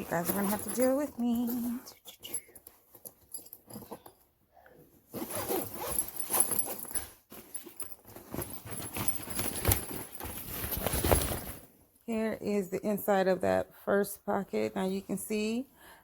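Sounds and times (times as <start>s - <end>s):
zipper being pulled open: 5.1s - 7.1s
fabric handling: 5.1s - 11.8s.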